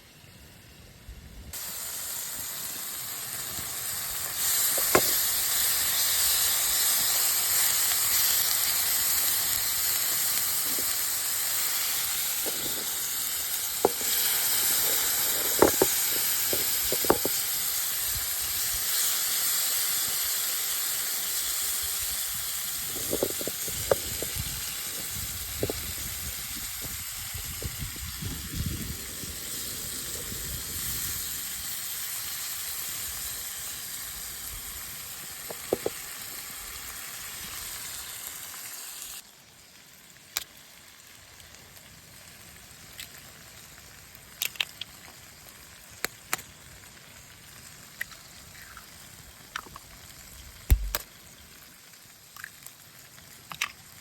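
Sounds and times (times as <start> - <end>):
food sizzling in a pan: 1.5 - 54.0
sharp pops and crackles: 3.4 - 18.9, 22.3 - 27.0, 35.4 - 36.7, 40.3 - 40.6, 42.8 - 47.2, 47.9 - 51.5, 52.3 - 54.0.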